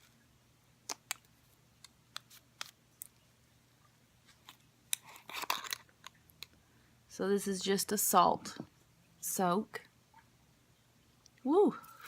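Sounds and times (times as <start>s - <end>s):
packaging clicks and crinkles: 4.4s - 6.2s.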